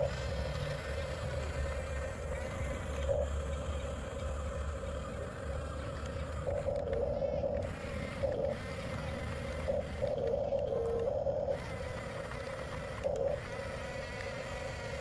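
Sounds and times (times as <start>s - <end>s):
toy bulldozer motors whining: 0.0s - 15.0s.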